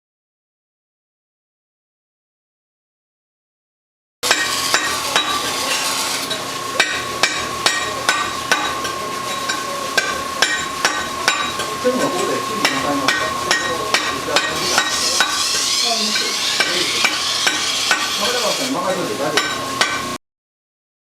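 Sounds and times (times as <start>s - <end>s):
knife grinding on stone wheel: 4.2s - 9.7s, 10.6s - 20.2s.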